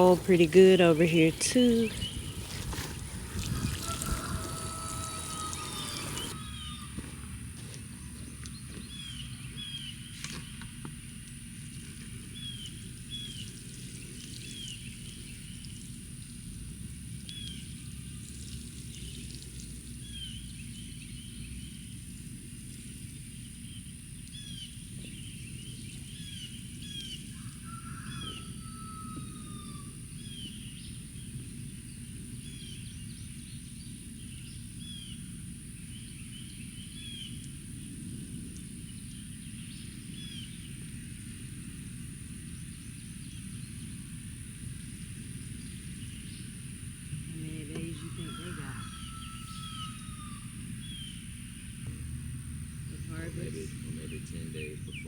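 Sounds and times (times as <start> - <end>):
bird chirping: 0.0 - 2.9, 3.5 - 7.3
bird falling call: 0.0 - 7.4
low outdoor rumble: 0.0 - 55.0.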